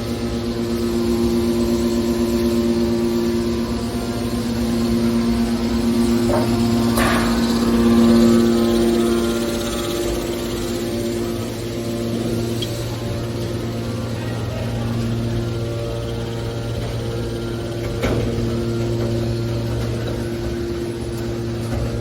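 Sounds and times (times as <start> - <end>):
scrap metal baler humming: 0.2 - 22.0
hydraulic metal clanks: 5.5 - 8.4.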